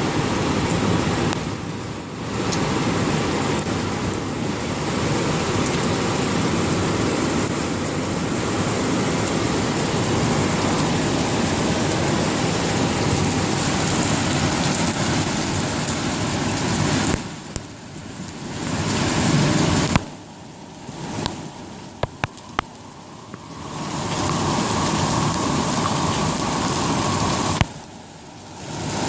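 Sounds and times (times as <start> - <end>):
heavy rain falling: 0.0 - 29.0.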